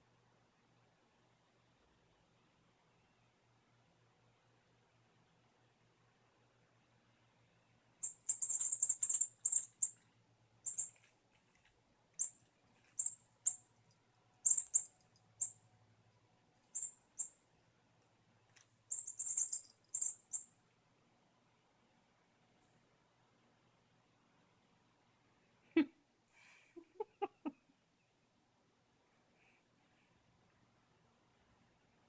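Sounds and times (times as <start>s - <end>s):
squeaky toy squeaking: 14.5s - 15.6s, 18.9s - 20.5s.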